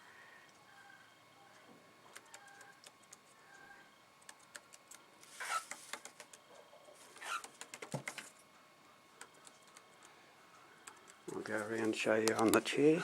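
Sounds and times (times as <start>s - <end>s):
paper rustling and scraping: 5.2s - 6.1s.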